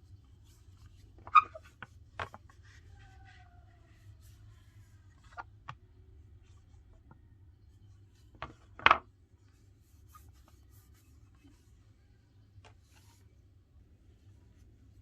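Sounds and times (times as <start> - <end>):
faint low hum: 0.0 - 15.0
rubbing phone case: 0.1 - 5.9, 7.9 - 13.5.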